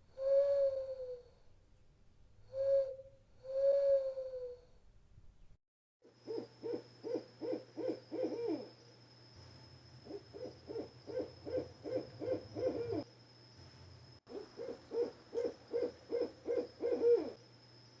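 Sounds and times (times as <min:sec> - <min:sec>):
owl hooting: 0:00.1 - 0:01.3, 0:02.5 - 0:04.7, 0:06.2 - 0:08.8, 0:10.0 - 0:13.1, 0:14.3 - 0:17.4.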